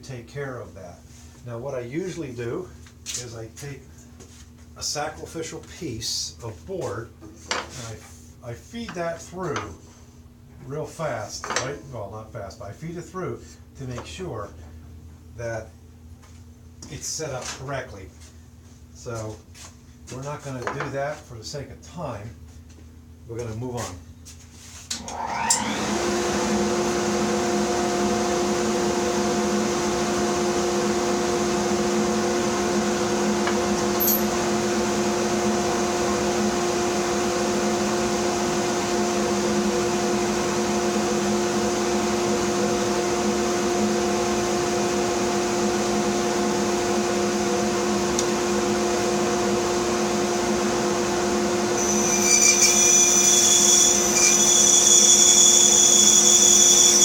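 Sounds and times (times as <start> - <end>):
bandsaw motor humming: 25.0 - 57.0
saw blade cutting wood: 34.0 - 34.3, 51.8 - 57.0.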